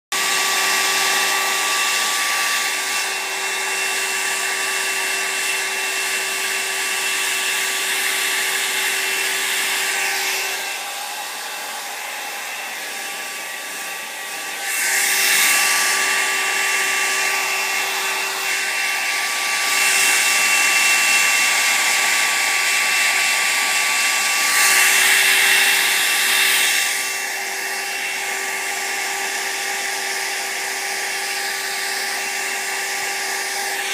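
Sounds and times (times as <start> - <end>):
hair dryer running: 0.1 - 33.9.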